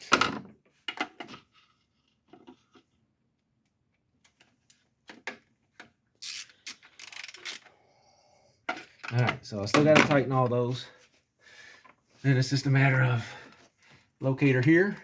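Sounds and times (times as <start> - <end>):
ratchet clicking: 6.2 - 7.6.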